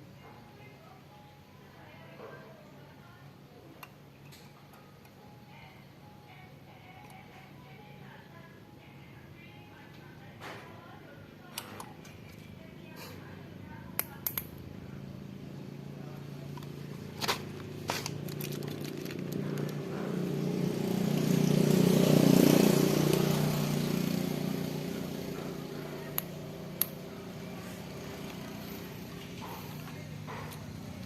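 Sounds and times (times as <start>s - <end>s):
sharp clicks: 14.0s - 14.6s, 26.1s - 27.0s
motor vehicle passing: 15.2s - 31.0s.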